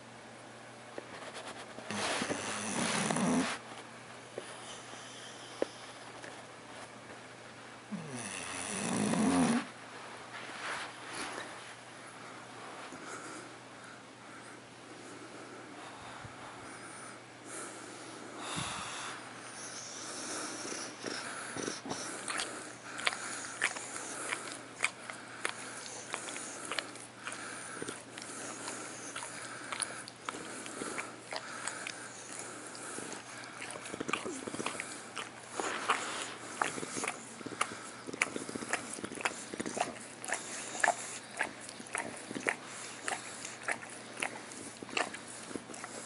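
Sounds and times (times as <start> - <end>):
dog licking and smacking lips: 22.2 - 46.0.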